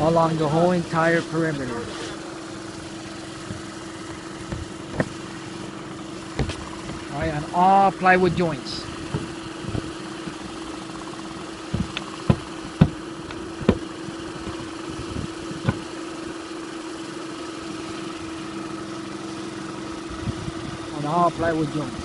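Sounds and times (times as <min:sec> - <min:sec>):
motor humming: 0:00.0 - 0:22.0
sharp knocks: 0:03.4 - 0:05.2, 0:06.3 - 0:07.1, 0:09.0 - 0:10.6, 0:11.4 - 0:15.9.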